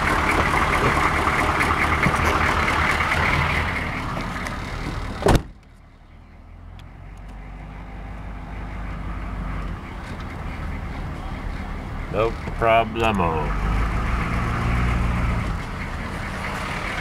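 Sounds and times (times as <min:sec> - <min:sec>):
diesel truck engine idling: 0:00.0 - 0:17.0
door slamming shut: 0:05.2 - 0:05.6.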